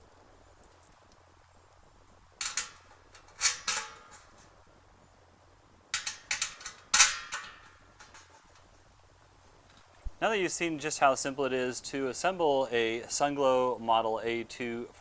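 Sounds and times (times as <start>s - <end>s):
metallic clinks of washers: 2.4s - 4.4s, 6.0s - 8.7s.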